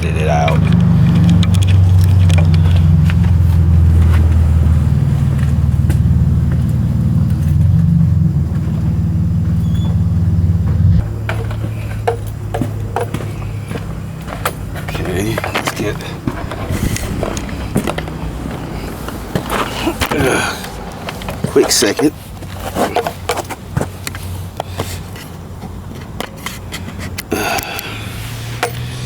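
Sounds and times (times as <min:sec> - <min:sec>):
light clicks and knocks: 0:00.0 - 0:04.8
motor humming: 0:00.0 - 0:22.2, 0:27.3 - 0:29.0.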